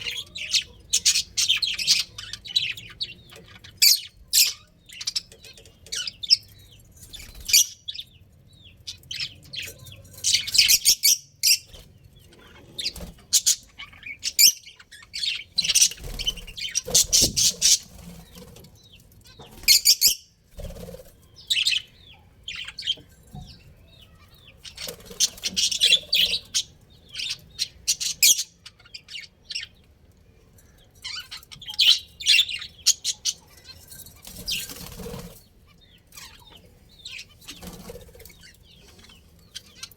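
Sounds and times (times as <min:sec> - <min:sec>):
budgerigars chirping: 0:00.0 - 0:08.2, 0:08.9 - 0:18.6, 0:19.3 - 0:23.0, 0:24.0 - 0:29.8, 0:31.0 - 0:39.9
wings fluttering: 0:20.5 - 0:21.3, 0:34.2 - 0:35.5, 0:37.4 - 0:38.5.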